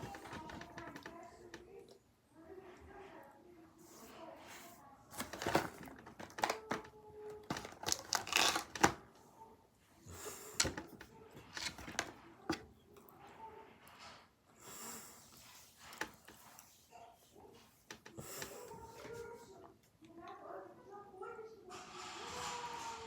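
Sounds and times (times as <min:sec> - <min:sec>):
snack package being handled: 0:05.1 - 0:09.0.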